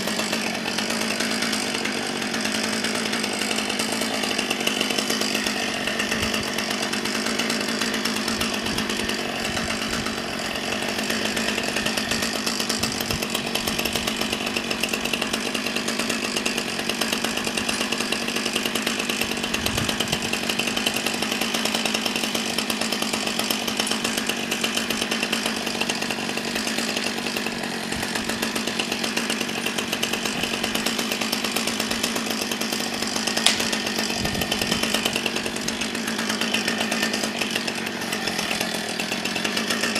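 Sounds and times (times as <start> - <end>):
chainsaw cutting a tree: 0.0 - 39.9
sharp click: 33.4 - 33.7.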